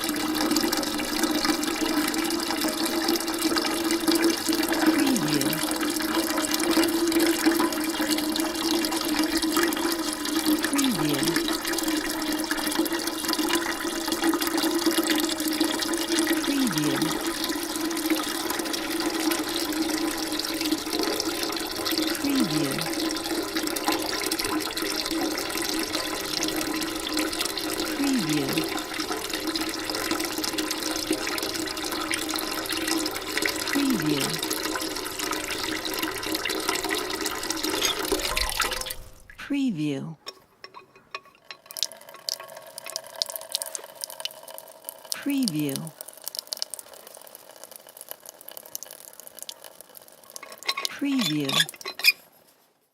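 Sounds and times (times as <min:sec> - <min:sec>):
water pouring into bucket: 0:00.0 - 0:39.4, 0:41.4 - 0:52.2.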